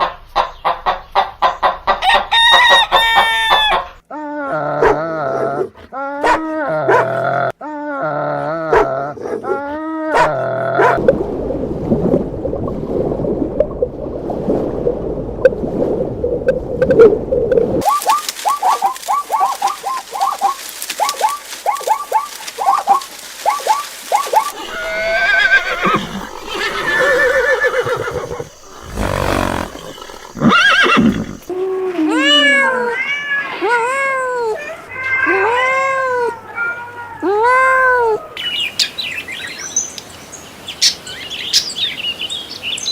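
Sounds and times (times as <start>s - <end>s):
animal calls: 17.8s - 31.5s
rising-and-falling calls: 17.8s - 31.5s.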